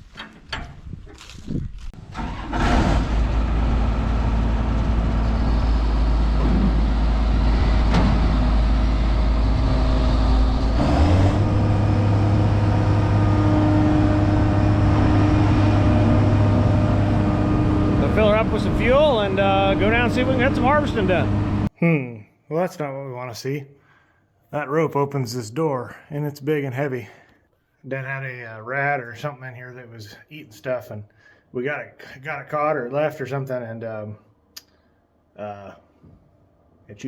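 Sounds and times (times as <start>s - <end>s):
diesel engine running: 2.0s - 21.7s.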